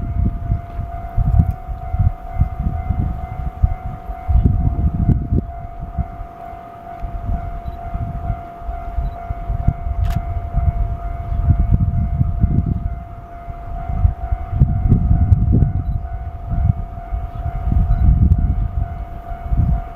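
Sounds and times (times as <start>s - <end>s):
level crossing alarm tone: 0.0s - 19.9s
low rumbling: 0.0s - 19.9s.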